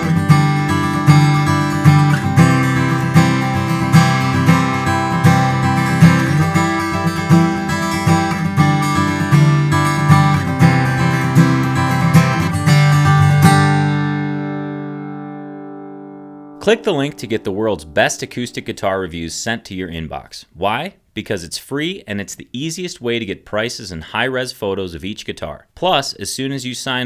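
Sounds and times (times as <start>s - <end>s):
acoustic guitar playing: 0.0s - 19.6s.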